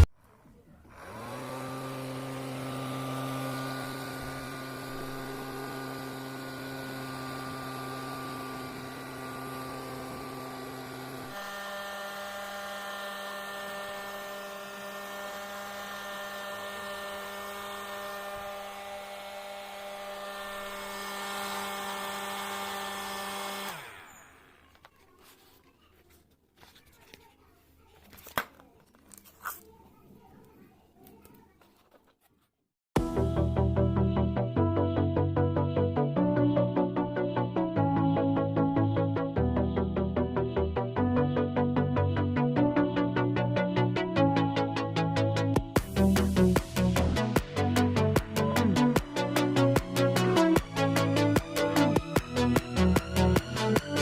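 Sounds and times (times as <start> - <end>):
small electric motor whining: 0.8 - 25.4, 45.6 - 54.0.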